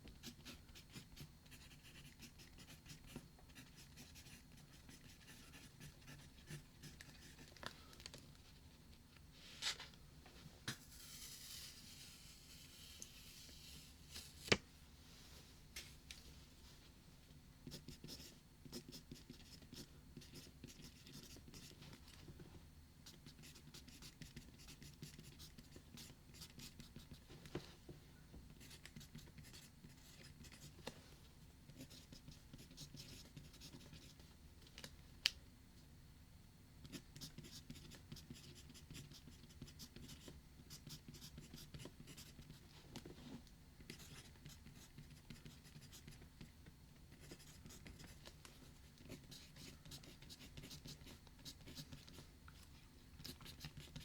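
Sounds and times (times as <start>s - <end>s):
pen scratching on paper: 0.2s - 7.4s, 49.1s - 52.0s.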